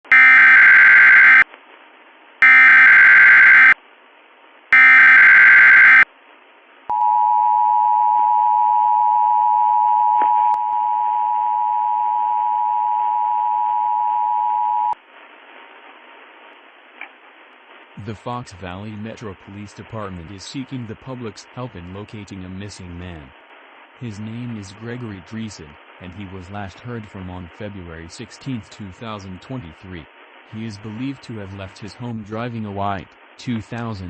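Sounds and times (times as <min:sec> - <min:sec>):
screeching digital data bursts: 0:00.1 - 0:01.4, 0:02.4 - 0:03.8, 0:04.8 - 0:06.0
steady two-tone attention signal: 0:00.1 - 0:01.4, 0:02.4 - 0:03.8, 0:04.8 - 0:06.0.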